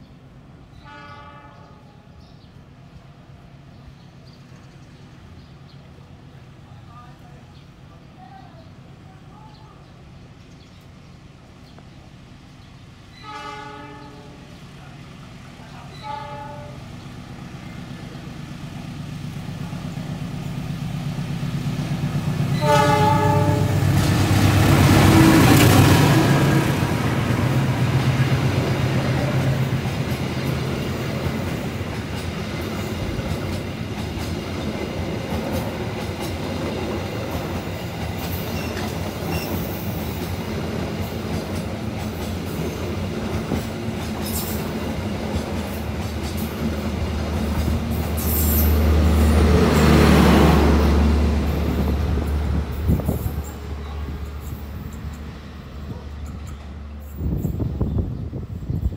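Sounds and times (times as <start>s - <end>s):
train horn blast: 0.8s - 2.1s, 13.2s - 14.5s, 15.9s - 17.0s, 22.5s - 24.1s
wheels clacking over rail joints: 21.8s - 50.1s.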